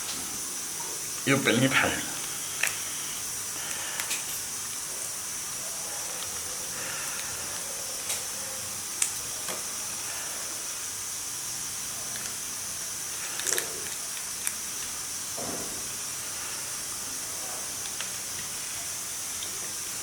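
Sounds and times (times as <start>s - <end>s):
steady high hiss: 0.0s - 20.0s
crab shell cracking: 2.2s - 4.8s, 8.9s - 9.7s, 12.1s - 15.0s.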